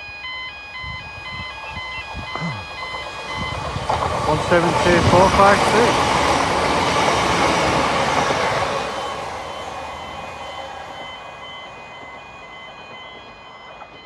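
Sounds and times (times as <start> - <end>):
diesel train running past: 0.0 - 14.0
warning beeper: 0.8 - 6.4.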